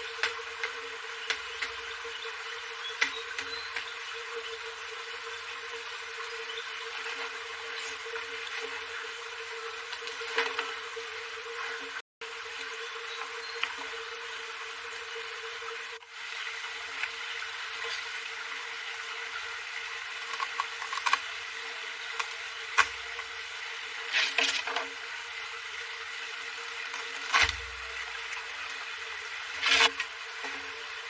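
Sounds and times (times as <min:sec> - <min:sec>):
outdoor background hum: 0:00.0 - 0:31.0.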